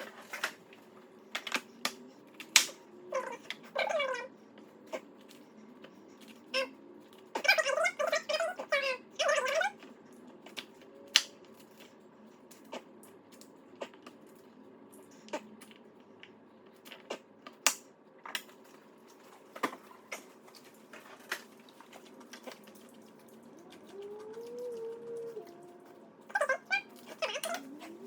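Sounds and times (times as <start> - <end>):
faint steady hum: 0.0 - 28.0
pet whining cry: 3.1 - 4.3, 23.7 - 28.0.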